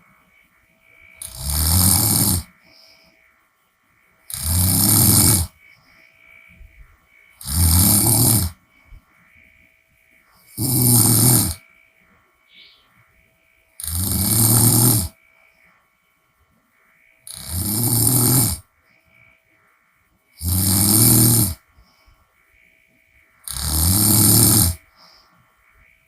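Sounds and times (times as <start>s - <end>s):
woman snoring: 1.2s - 3.0s, 4.3s - 5.6s, 7.4s - 8.6s, 10.4s - 11.6s, 13.8s - 15.2s, 17.3s - 18.7s, 20.4s - 21.6s, 23.4s - 24.9s.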